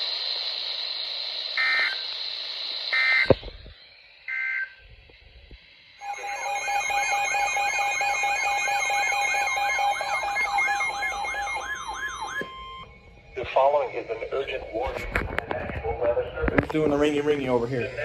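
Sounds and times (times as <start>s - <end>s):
two-pitch data tone bursts: 1.3s - 15.2s
steady tone: 4.8s - 18.0s
warbling siren-like alert tone: 6.0s - 15.4s.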